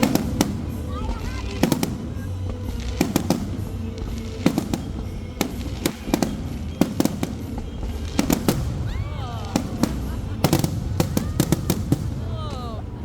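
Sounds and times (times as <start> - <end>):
fireworks bangs: 0.0 - 13.0
steady low rumble: 8.0 - 13.0.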